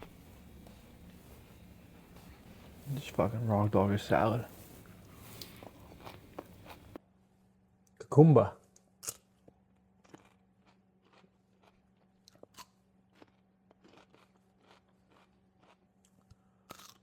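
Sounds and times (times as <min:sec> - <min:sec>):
chewing crunchy cucumber: 0:00.0 - 0:07.0, 0:09.0 - 0:17.0.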